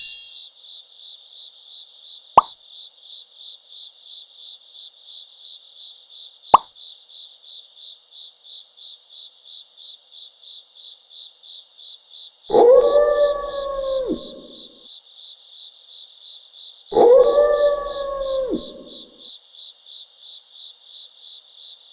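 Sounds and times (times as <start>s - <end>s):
crickets chirping: 0.0s - 21.9s
wolf howling: 12.5s - 14.8s, 16.9s - 19.2s.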